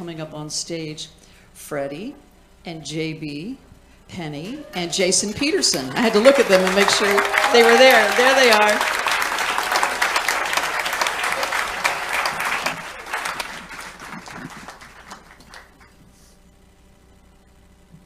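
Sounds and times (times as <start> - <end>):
congregation applauding: 4.5 - 16.0.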